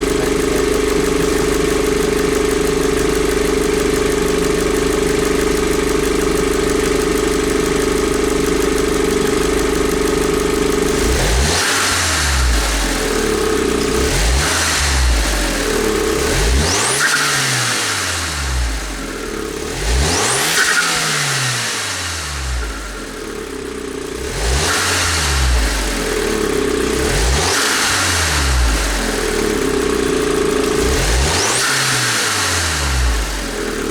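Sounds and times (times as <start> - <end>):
car engine idling and revving: 0.0 - 33.9.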